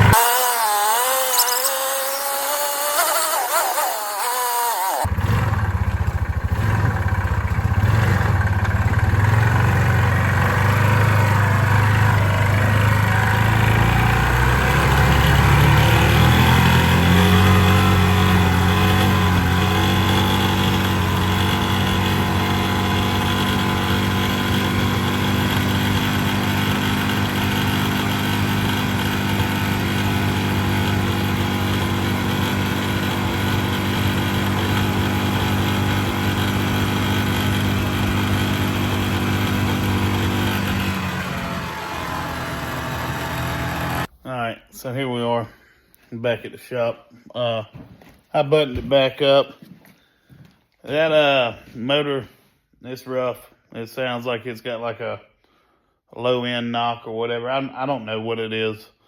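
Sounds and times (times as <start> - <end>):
four-stroke engine running: 0.0 - 44.1.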